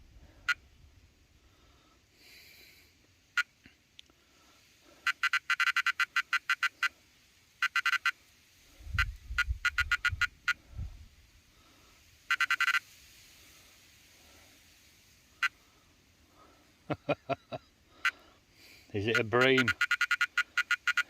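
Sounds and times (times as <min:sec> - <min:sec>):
fast high electronic beeps: 0:12.3 - 0:12.8, 0:19.1 - 0:21.0.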